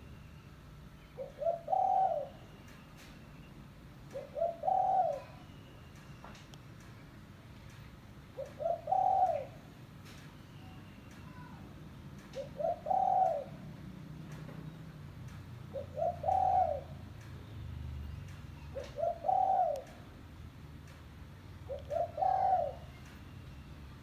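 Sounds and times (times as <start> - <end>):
dove cooing: 1.2 - 2.6, 4.1 - 5.6, 8.3 - 9.8, 12.4 - 13.9, 15.6 - 17.2, 18.6 - 20.2, 21.6 - 23.1.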